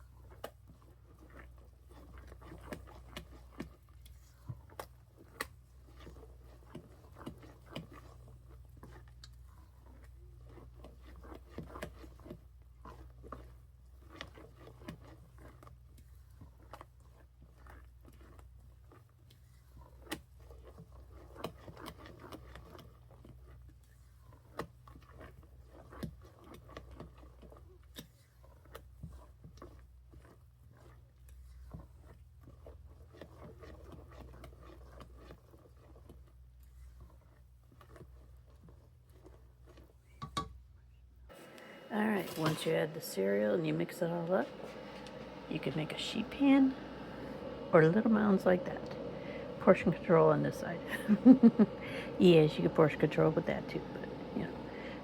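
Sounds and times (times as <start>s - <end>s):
steady low hum: 41.3s - 55.0s.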